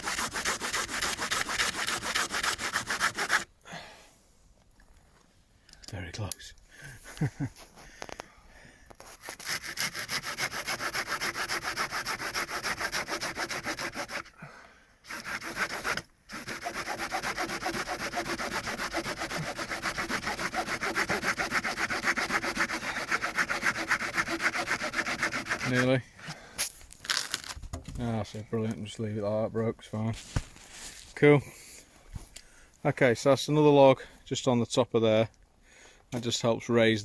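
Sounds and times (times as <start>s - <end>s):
hand saw cutting wood: 0.0s - 3.5s, 9.0s - 14.3s, 15.0s - 26.0s.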